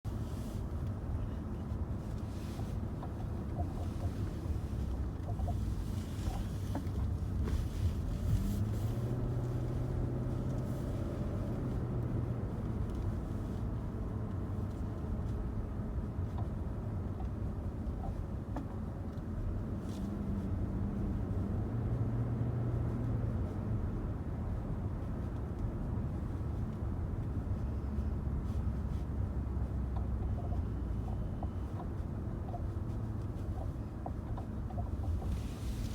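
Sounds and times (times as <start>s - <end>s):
car engine running: 0.1s - 35.9s
faint irregular clicks: 11.5s - 22.2s, 22.8s - 35.9s.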